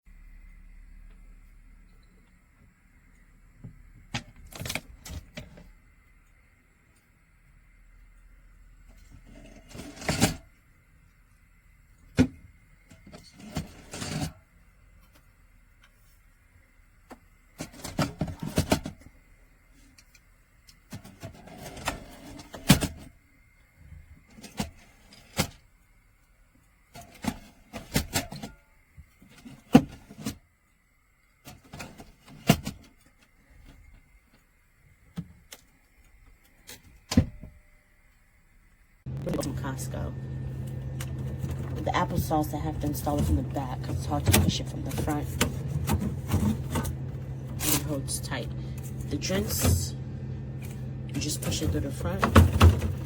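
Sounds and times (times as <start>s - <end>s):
cans knocking and rustling: 40.7s - 48.0s, 51.5s - 53.0s.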